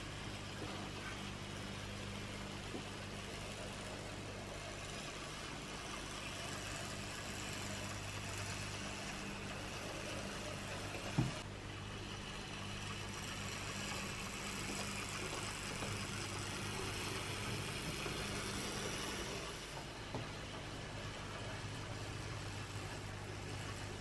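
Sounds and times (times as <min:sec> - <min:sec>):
model locomotive motor whirring: 0:00.0 - 0:24.0.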